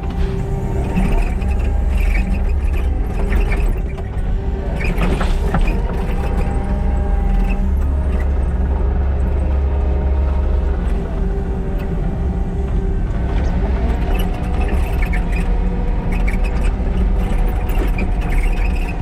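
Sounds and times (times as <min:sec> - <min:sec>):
diesel engine running under load: 0:00.0 - 0:19.0.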